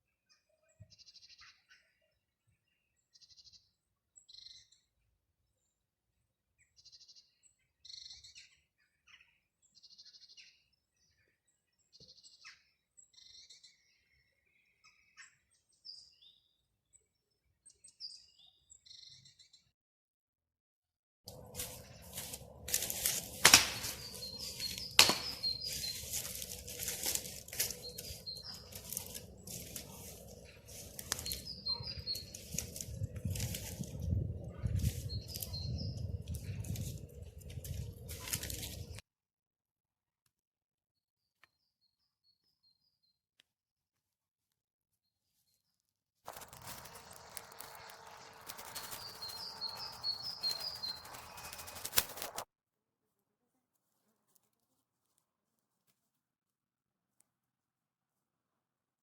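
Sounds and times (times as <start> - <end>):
rustling: 21.3 - 34.1, 36.3 - 39.0, 46.3 - 52.5
birds chirping: 21.3 - 39.0, 46.3 - 52.4
sharp knocks: 25.0 - 25.4.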